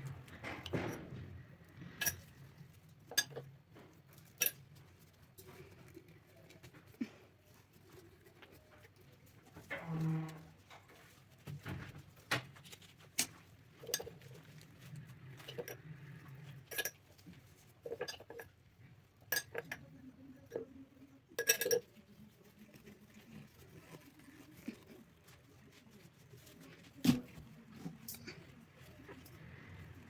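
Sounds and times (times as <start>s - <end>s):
dishes and utensils clinking: 0.0s - 2.4s, 3.0s - 4.6s, 13.2s - 14.6s, 15.3s - 18.5s, 19.2s - 20.7s, 21.3s - 22.4s.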